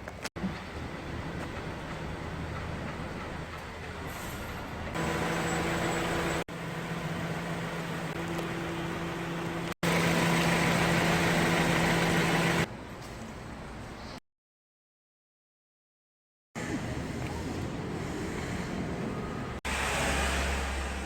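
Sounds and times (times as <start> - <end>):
car engine idling: 5.0 - 12.7.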